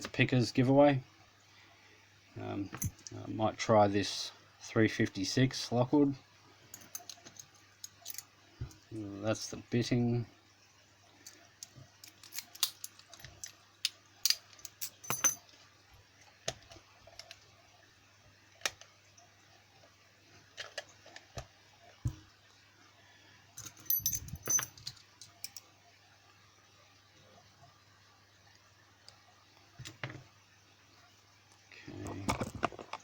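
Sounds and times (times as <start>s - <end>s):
keys and metal tools jangling: 14.8s - 15.4s, 23.6s - 25.6s.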